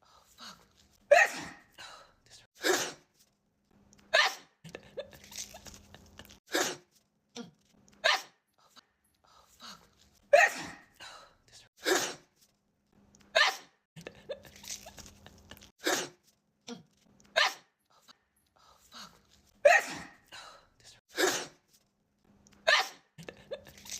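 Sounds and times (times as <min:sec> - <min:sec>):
woman sneezing: 0:01.1 - 0:01.6, 0:02.6 - 0:03.1, 0:06.5 - 0:06.9, 0:10.3 - 0:10.9, 0:11.8 - 0:12.3, 0:13.4 - 0:13.7, 0:15.8 - 0:16.2, 0:19.6 - 0:20.2, 0:21.1 - 0:21.6, 0:22.7 - 0:23.1.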